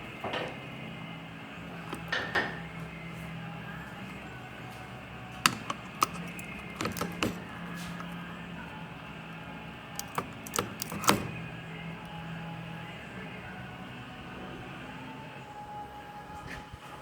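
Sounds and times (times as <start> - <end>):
low machine hum: 0.0 - 17.0
sharp clicks and knocks: 5.4 - 8.1, 10.0 - 11.4.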